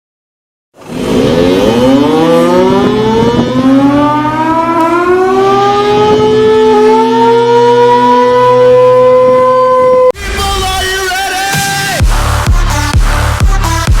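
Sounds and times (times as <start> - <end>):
low drone: 0.8 - 10.4
rising siren: 0.8 - 10.8.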